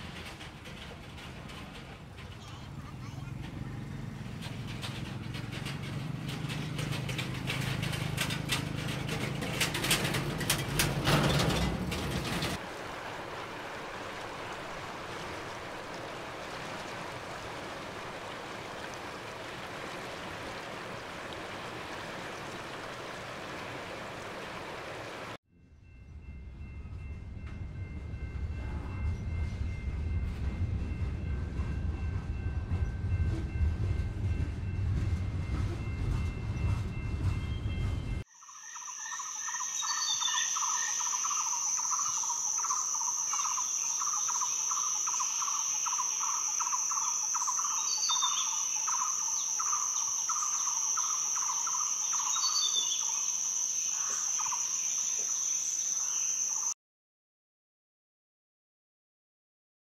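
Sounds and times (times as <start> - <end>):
train rumbling: 0.0 - 38.3
bird chirps: 37.4 - 56.7
insect chorus buzzing: 38.3 - 56.7.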